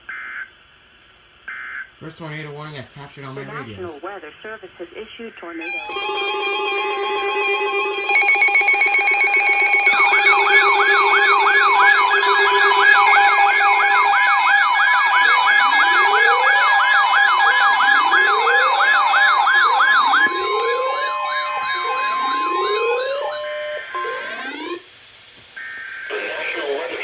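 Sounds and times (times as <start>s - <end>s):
slow rising siren wail: 5.6s - 24.8s
yelp siren sweeping: 5.6s - 24.8s
steady alarm tones: 5.6s - 24.9s.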